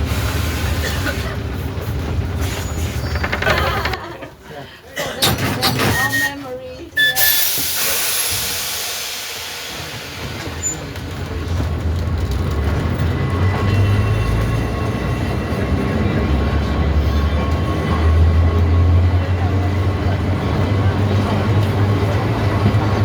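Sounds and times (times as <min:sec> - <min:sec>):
tram rumbling on rails: 0:00.0 - 0:23.0
hiss: 0:07.3 - 0:10.6.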